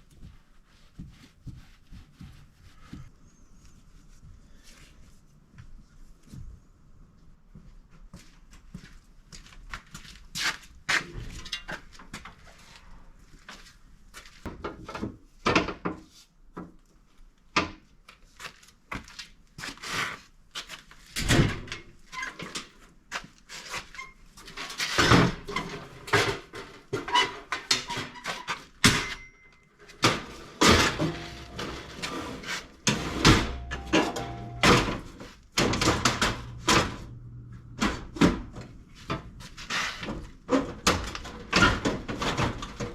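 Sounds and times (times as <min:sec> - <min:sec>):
tools and metal parts clanking: 0:28.9 - 0:37.0
faint low hum: 0:35.8 - 0:39.2.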